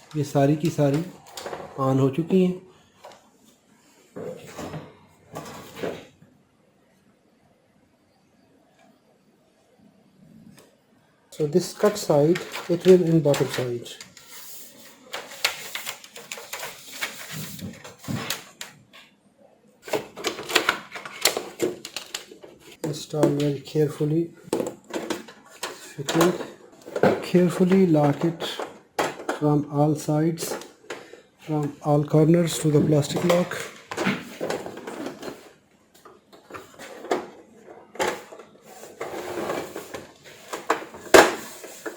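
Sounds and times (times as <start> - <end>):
plastic parts clicking: 11.8 - 14.3, 19.8 - 22.6
handling noise: 30.0 - 41.9.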